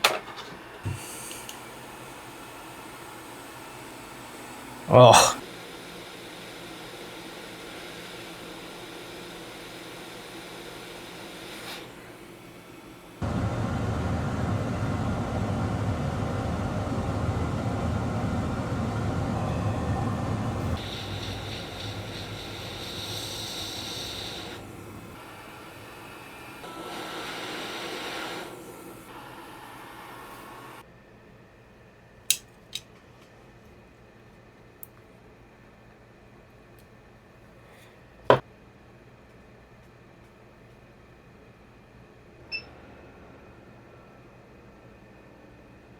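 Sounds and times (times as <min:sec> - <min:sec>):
hot air station hissing: 0:00.0 - 0:30.8.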